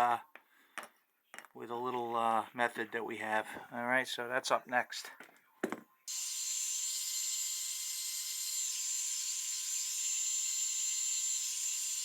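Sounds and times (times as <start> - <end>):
faint motor whine: 6.1 - 12.0
heat gun hissing: 6.1 - 12.0.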